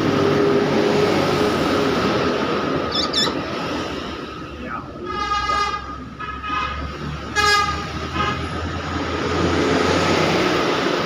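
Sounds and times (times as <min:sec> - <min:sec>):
bird giving nasal calls: 0:02.9 - 0:03.5.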